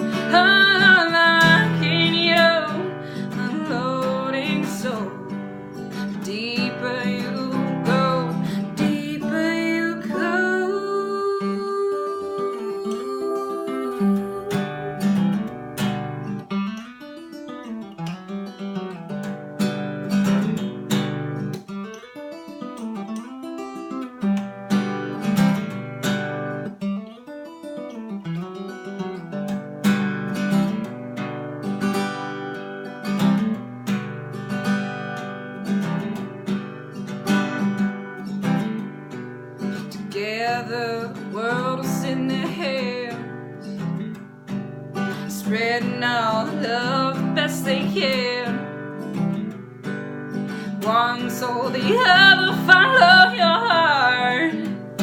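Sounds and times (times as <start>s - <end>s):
acoustic guitar strumming: 0.0s - 55.0s.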